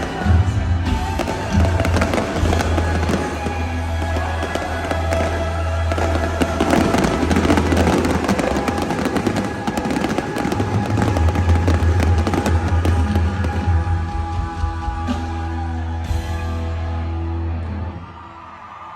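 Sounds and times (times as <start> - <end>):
fireworks bursting and crackling: 0.0 - 14.6
loud concert music with bass: 0.0 - 18.9.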